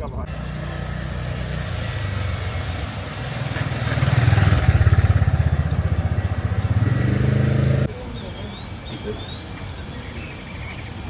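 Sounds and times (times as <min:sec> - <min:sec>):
motorcycle engine throbbing: 0:00.3 - 0:07.9.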